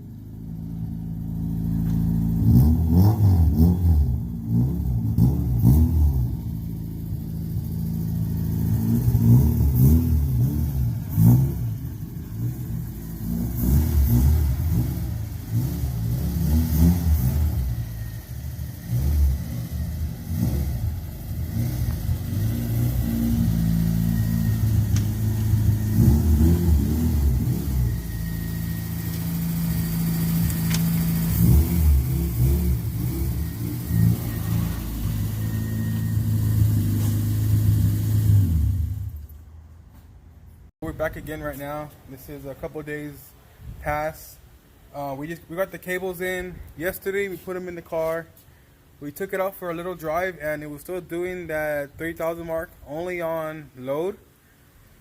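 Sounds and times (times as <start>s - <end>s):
car engine accelerating through gears: 1.2s - 39.3s.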